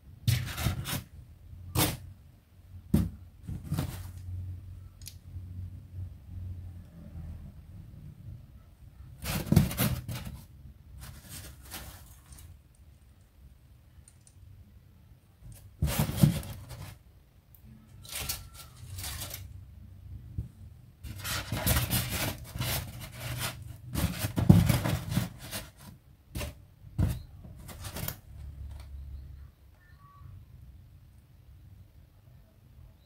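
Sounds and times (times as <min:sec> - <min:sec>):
plastic packaging rustling: 0:11.0 - 0:12.6, 0:18.0 - 0:19.6, 0:21.0 - 0:28.2.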